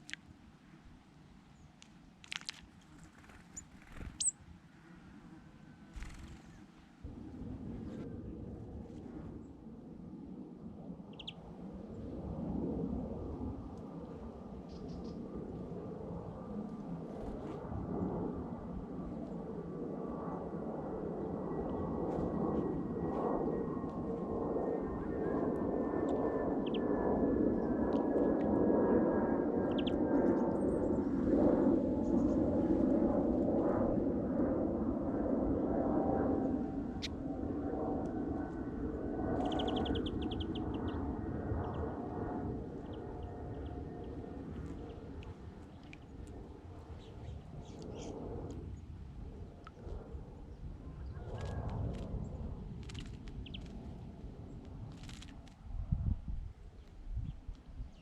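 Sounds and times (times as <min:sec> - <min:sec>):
aircraft flying over: 0:02.0 - 0:58.0
bird chirps: 0:03.2 - 0:04.4, 0:11.1 - 0:11.4, 0:26.6 - 0:26.8, 0:29.7 - 0:30.0, 0:39.4 - 0:41.0.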